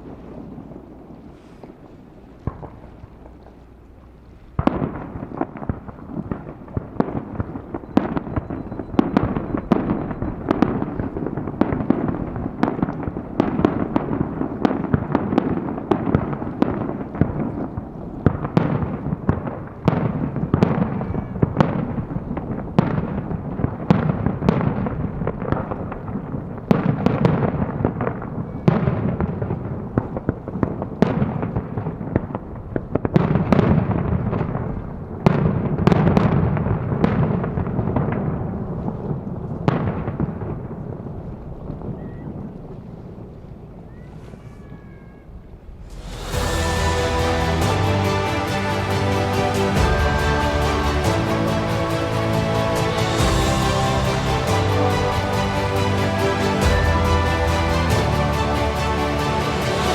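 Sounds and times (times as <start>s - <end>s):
fireworks bursting: 4.5s - 30.3s, 45.5s - 59.9s.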